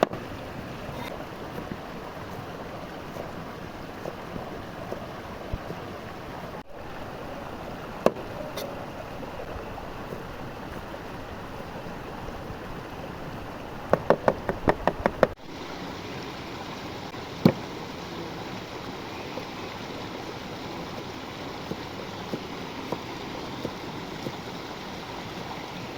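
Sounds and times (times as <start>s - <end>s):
running water rushing: 0.0s - 25.9s
knocks: 13.9s - 15.4s.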